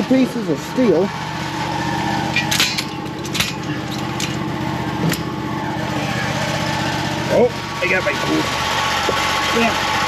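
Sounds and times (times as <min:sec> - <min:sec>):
generator engine idling: 0:00.0 - 0:10.0
metallic clinks of tools: 0:02.4 - 0:04.5.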